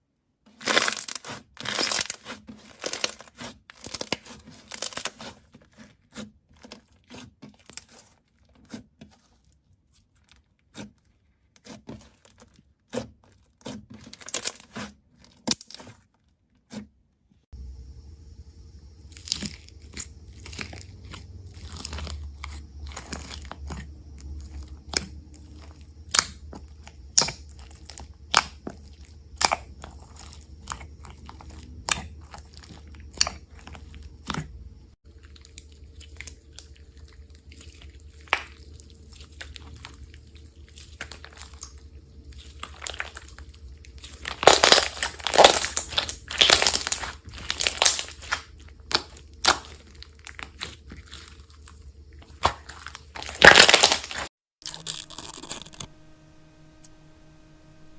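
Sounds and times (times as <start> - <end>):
crinkly slime crackling: 0.5 - 16.8, 19.0 - 55.9
slime popping: 44.0 - 51.3, 52.2 - 55.9.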